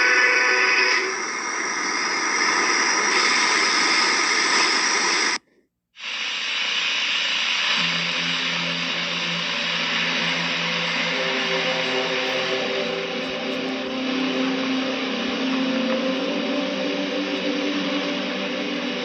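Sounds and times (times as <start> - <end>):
harsh static hiss: 0.0 - 19.0
low two-tone hum: 7.8 - 19.0.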